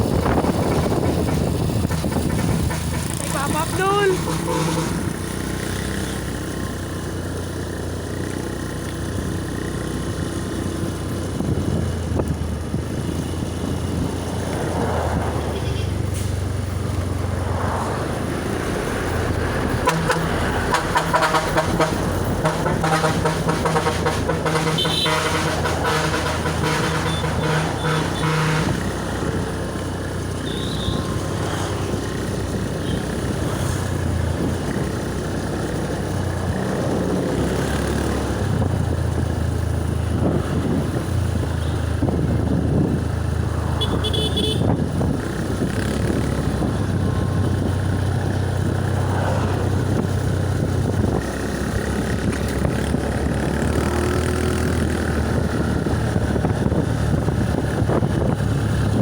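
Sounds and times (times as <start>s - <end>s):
vehicles and motorcycles passing: 0.0s - 59.0s
car horn: 3.4s - 5.3s, 19.7s - 29.4s, 30.4s - 31.6s, 32.8s - 33.2s, 41.4s - 42.2s, 43.6s - 45.2s.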